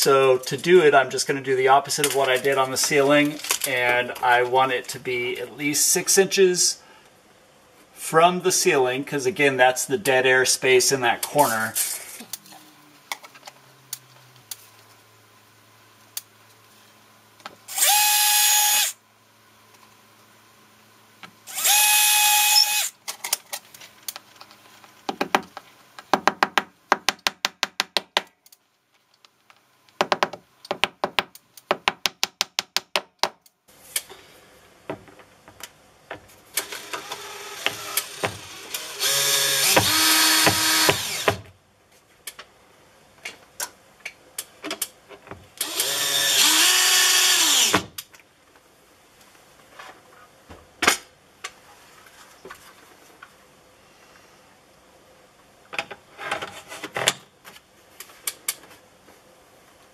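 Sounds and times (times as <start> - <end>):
cordless drill running: 17.7 - 19.0, 21.5 - 23.0, 36.6 - 41.4, 45.6 - 47.7.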